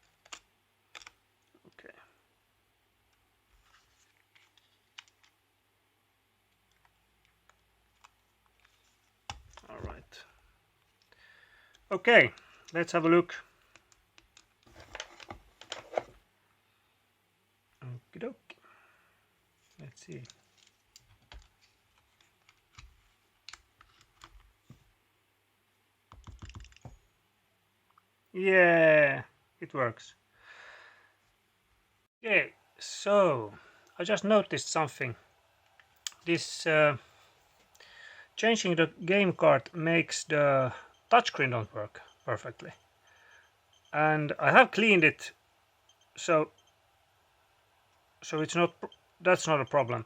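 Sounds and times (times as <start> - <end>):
faint clicks of small parts: 0.0 - 1.8, 3.1 - 5.4, 10.8 - 15.8, 19.6 - 24.5
game console clicks and taps: 20.2 - 24.5.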